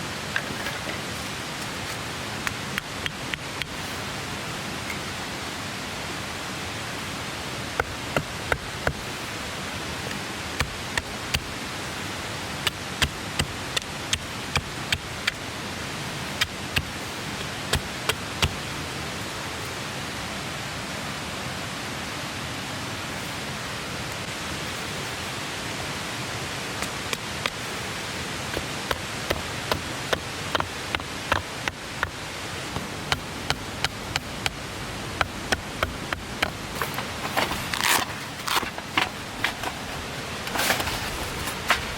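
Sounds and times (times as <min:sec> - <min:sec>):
stream rushing: 0:00.0 - 0:41.9
campfire crackling: 0:26.8 - 0:40.0.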